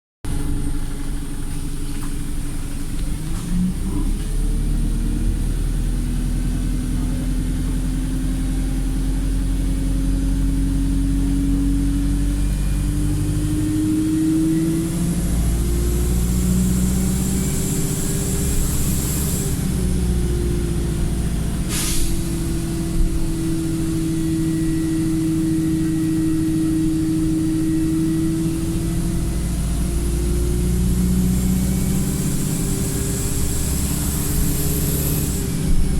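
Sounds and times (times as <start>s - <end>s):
bus diesel engine: 0.2s - 35.9s
air hiss: 21.7s - 22.4s.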